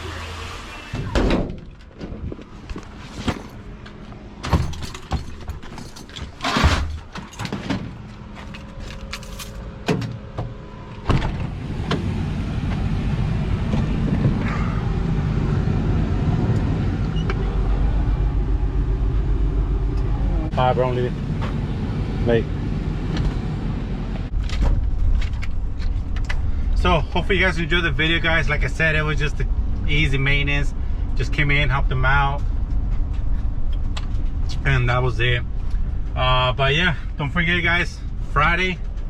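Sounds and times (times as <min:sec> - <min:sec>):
low mechanical rumble: 0:00.0 - 0:39.0
knocks and clatter: 0:01.1 - 0:12.0.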